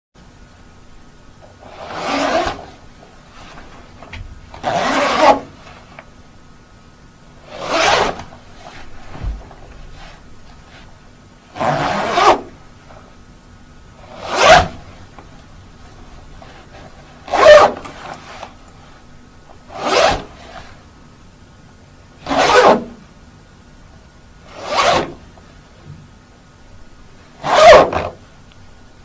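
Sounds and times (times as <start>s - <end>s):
jacket zipper being pulled: 1.6s - 6.1s, 7.4s - 12.6s, 14.0s - 15.0s, 16.1s - 18.6s, 19.7s - 20.8s, 22.2s - 23.0s, 24.5s - 25.2s, 27.4s - 28.2s.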